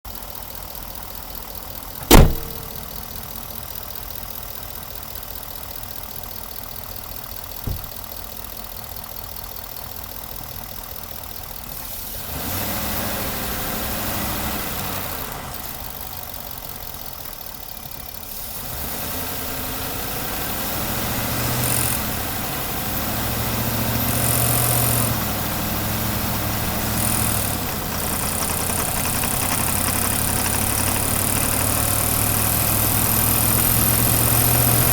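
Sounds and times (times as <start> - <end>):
truck engine running: 0.2 - 11.2, 20.6 - 34.9
sharp click: 2.0 - 3.3.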